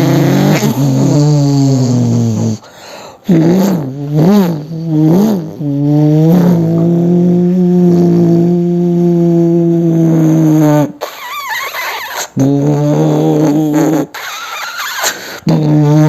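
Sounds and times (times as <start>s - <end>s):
man imitating car engine: 0.0s - 2.6s.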